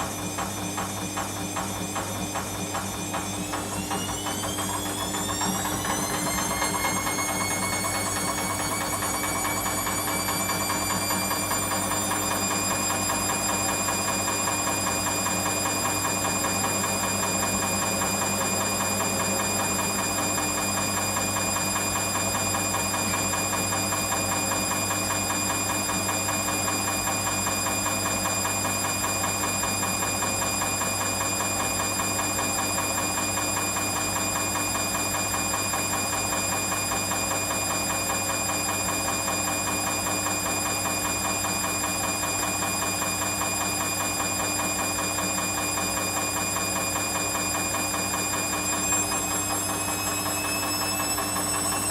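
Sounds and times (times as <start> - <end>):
washing machine running: 0.0 - 51.9.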